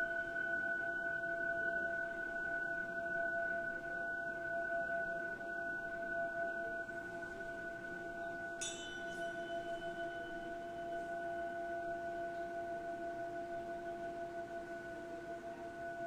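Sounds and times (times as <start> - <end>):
singing bowls ringing: 6.0 - 16.0
bright metal chime: 8.6 - 12.0.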